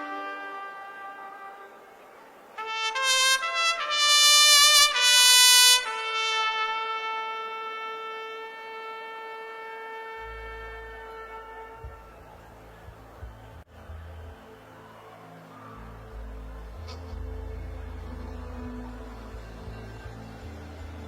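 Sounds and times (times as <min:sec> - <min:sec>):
solo trumpet: 0:00.0 - 0:12.4, 0:16.3 - 0:20.6.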